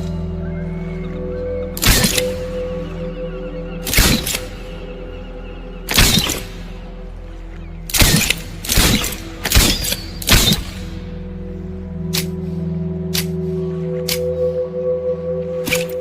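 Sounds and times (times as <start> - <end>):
steady music drone: 0.0 - 16.0
wristbow firing shots: 7.9 - 10.8.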